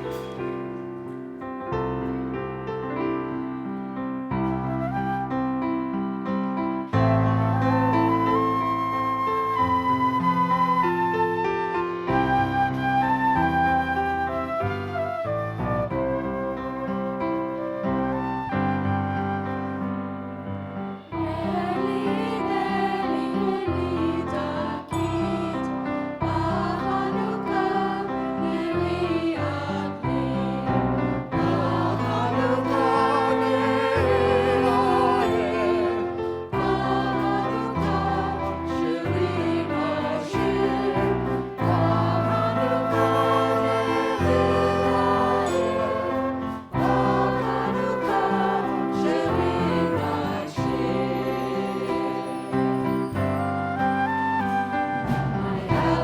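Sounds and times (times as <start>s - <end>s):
instrumental accompaniment: 0.0s - 56.0s
group singing worship song: 21.1s - 52.8s, 55.0s - 56.0s.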